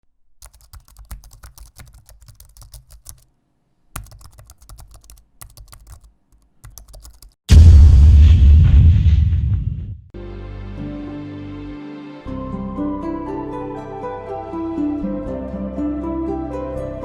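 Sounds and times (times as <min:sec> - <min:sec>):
keyboard typing: 0:00.4 - 0:03.3, 0:04.0 - 0:07.4
loud boom with deep rumble: 0:07.5 - 0:10.1.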